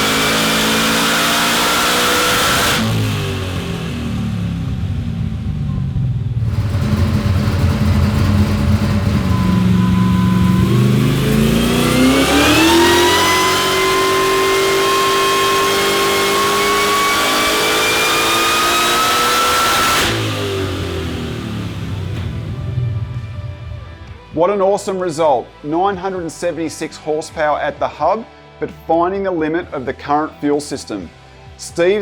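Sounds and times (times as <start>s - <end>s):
engine revving at full throttle: 0.0s - 5.6s, 6.4s - 23.4s
supercharger whine: 0.0s - 24.2s.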